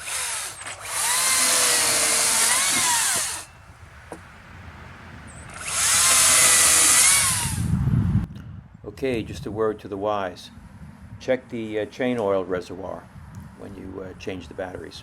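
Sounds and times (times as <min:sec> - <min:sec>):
chainsaw cutting wood: 0:00.0 - 0:03.5, 0:05.5 - 0:07.7.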